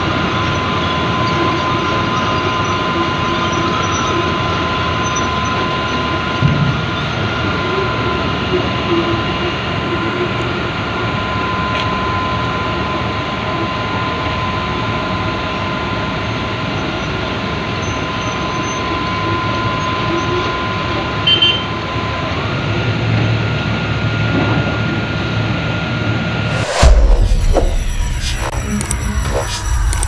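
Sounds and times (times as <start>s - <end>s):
heavy machinery running: 22.2s - 30.0s
thin machine whine: 26.1s - 30.0s.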